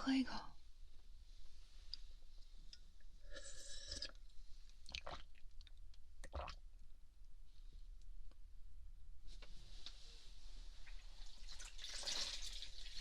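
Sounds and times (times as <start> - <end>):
person sipping and swallowing: 3.2 - 4.2, 4.9 - 5.4, 6.2 - 6.6
slurp: 3.3 - 4.2.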